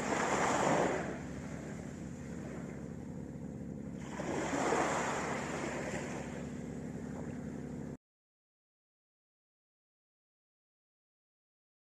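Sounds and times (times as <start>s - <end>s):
sea waves washing on beach: 0.0s - 2.9s, 4.0s - 7.5s.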